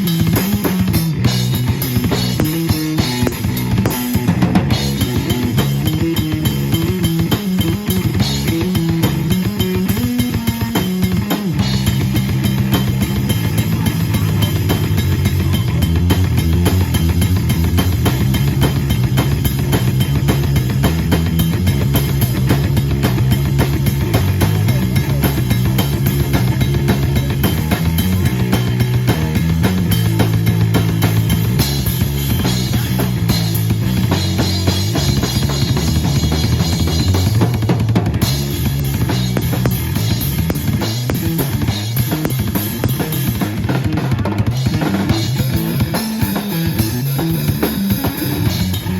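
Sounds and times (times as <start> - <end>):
drum hits: 0.0 - 13.8, 32.5 - 46.0
bass guitar line: 0.0 - 48.9
rock band playing: 0.0 - 48.9.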